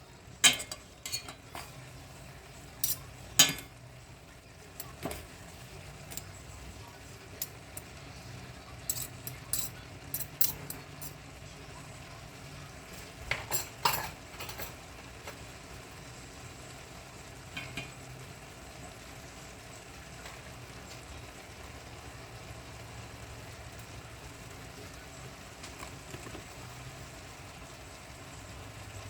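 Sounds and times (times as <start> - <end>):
low steady background noise: 0.0 - 29.0
metal utensil scraping a pan: 0.4 - 2.0, 2.7 - 3.8, 8.8 - 11.2.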